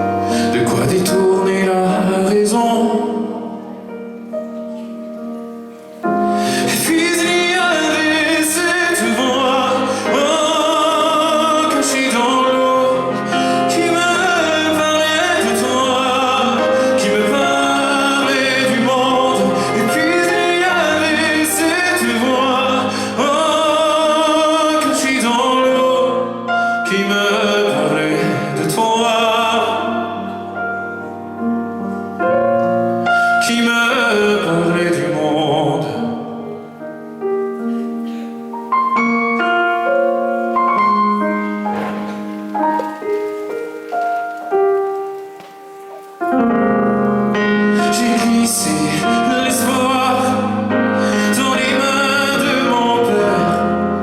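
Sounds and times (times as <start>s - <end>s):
person singing: 0.0s - 5.0s, 6.1s - 31.3s, 47.3s - 54.0s
pop-folk instrumental accompaniment: 0.0s - 54.0s.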